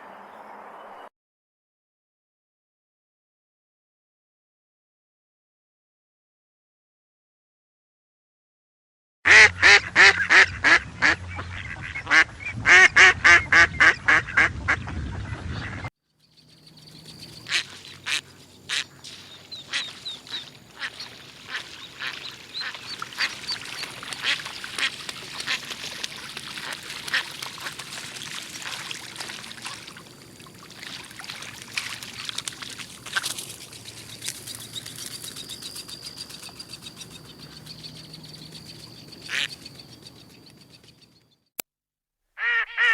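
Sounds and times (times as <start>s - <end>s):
birds chirping: 15.5s - 27.9s, 32.1s - 41.5s
harsh bird calls: 16.3s - 25.8s, 33.5s - 41.2s.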